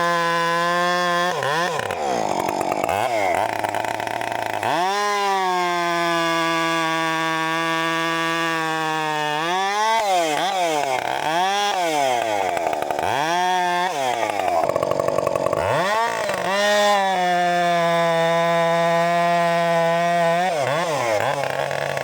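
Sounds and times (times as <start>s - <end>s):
chainsaw running: 0.0s - 22.0s.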